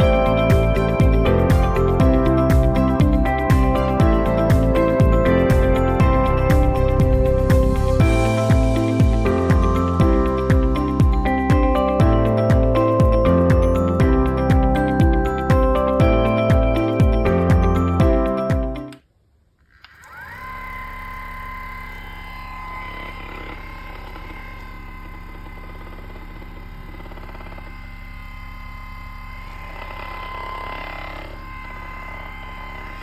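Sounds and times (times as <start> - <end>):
massage gun motor buzzing: 0.0 - 18.6, 19.7 - 33.0
music: 0.0 - 19.0.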